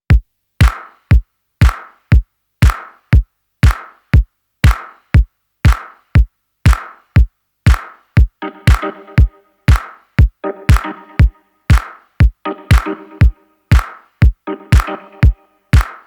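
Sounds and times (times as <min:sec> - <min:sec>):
drum machine beat: 0:00.0 - 0:16.0
deep kick drum: 0:00.1 - 0:14.4
noisy clap-like hit: 0:00.6 - 0:01.0, 0:01.6 - 0:02.0, 0:02.6 - 0:03.0, 0:03.6 - 0:04.0, 0:04.7 - 0:05.1, 0:05.7 - 0:06.1, 0:06.7 - 0:07.0, 0:07.7 - 0:08.0, 0:09.7 - 0:10.1, 0:11.7 - 0:12.1, 0:13.7 - 0:14.1, 0:15.8 - 0:16.0.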